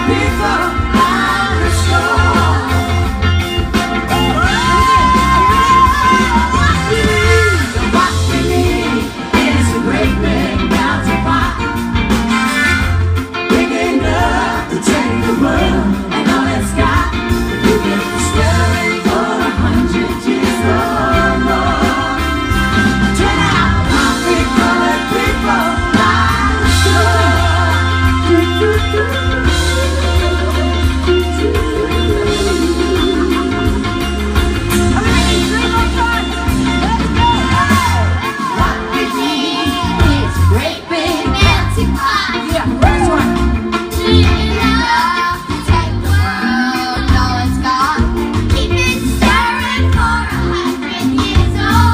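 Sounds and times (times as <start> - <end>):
bass line: 0.0 - 51.9
drums: 0.0 - 51.9
guitar: 0.0 - 51.9
person singing: 23.2 - 41.2.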